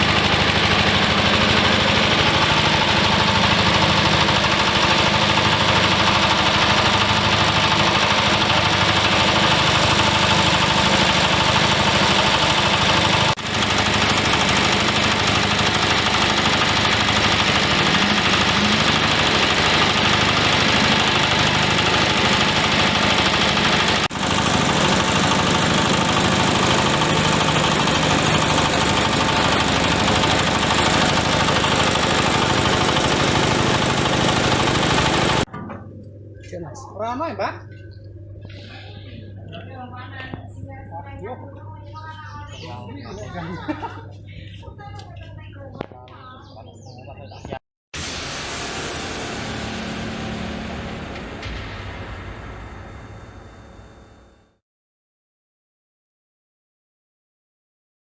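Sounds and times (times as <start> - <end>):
milling machine running: 0.0 - 35.5, 48.0 - 54.2.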